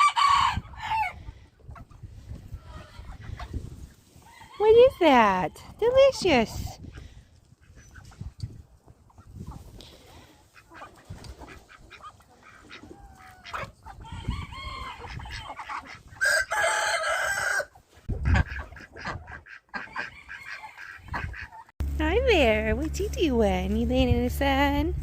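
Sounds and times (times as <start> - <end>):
rooster crowing: 0.0 - 1.2, 16.2 - 17.7
chickens clucking: 0.0 - 21.7.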